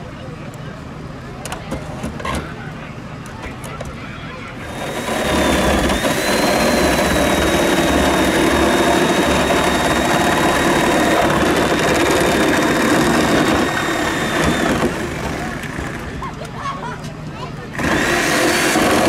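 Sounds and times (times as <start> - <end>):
machine motor whining: 4.6 - 16.2, 17.7 - 19.0.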